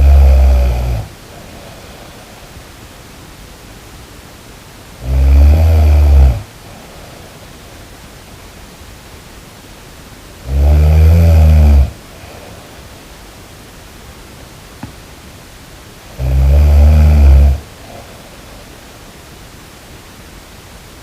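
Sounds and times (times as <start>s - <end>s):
person snoring loudly: 0.0s - 2.3s, 5.0s - 7.0s, 10.4s - 12.6s, 16.1s - 18.3s
steady background hiss: 0.0s - 21.0s.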